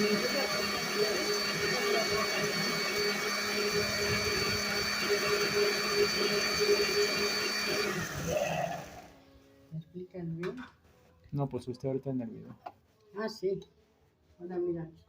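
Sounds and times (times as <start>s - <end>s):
electric blender running: 0.0s - 9.2s.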